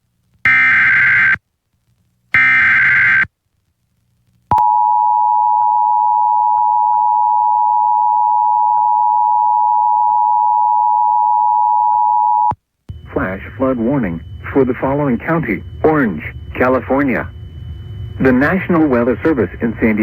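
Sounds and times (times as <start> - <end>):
two-tone attention signal: 10.6 - 20.0.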